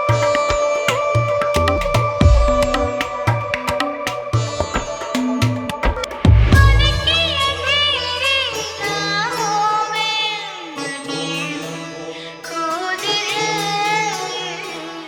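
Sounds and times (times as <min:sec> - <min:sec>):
steady drone: 0:00.0 - 0:09.7
deep bass note: 0:06.3 - 0:08.5.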